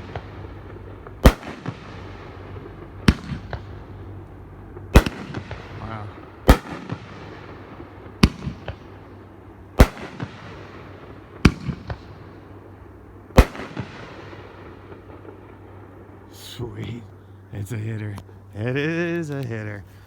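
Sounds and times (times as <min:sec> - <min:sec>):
fireworks booming with echo: 0:00.0 - 0:17.1
small firework pops: 0:08.2 - 0:08.8.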